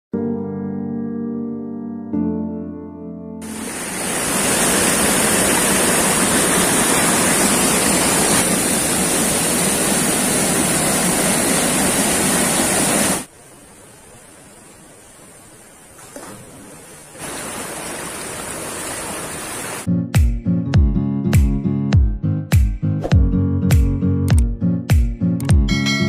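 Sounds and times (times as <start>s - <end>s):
waterfall rushing: 3.4s - 19.9s.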